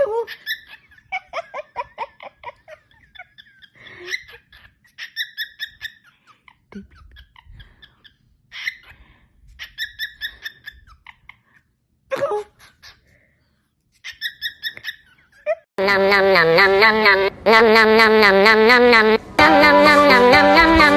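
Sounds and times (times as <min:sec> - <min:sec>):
cockatiel chirping: 0:04.2 - 0:06.4, 0:09.6 - 0:11.4, 0:14.0 - 0:15.3.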